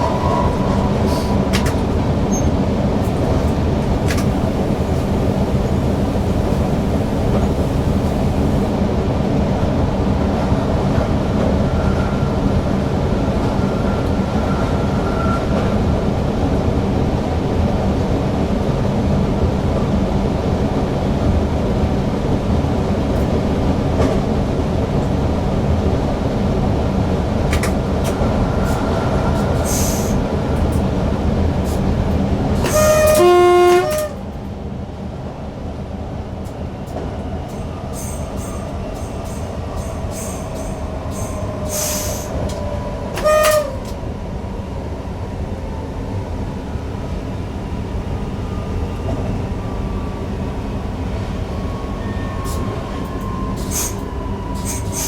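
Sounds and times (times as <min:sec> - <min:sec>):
electric train running: 0:27.4 - 0:34.2.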